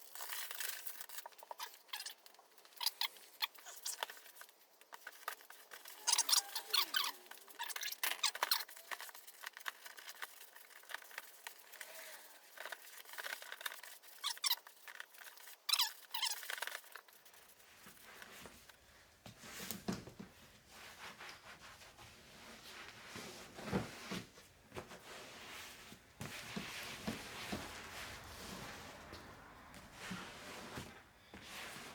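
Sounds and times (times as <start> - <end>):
squeaky scratchy rubbing on vinyl: 0.8 - 18.5.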